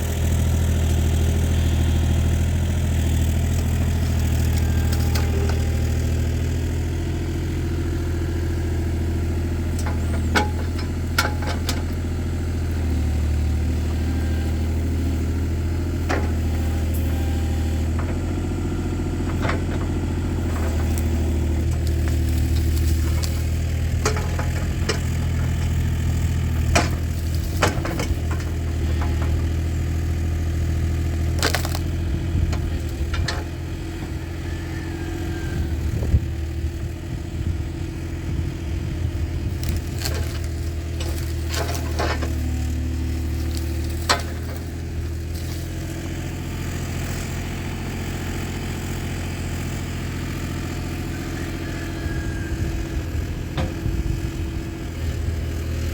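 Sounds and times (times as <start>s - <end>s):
engine idling: 0.0s - 55.9s.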